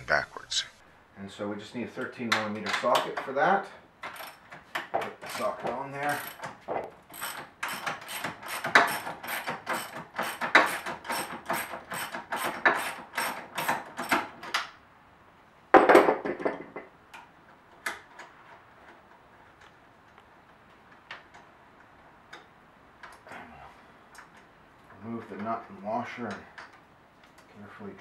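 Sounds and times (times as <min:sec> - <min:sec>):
ratchet wrench clicking: 0:06.1 - 0:06.5.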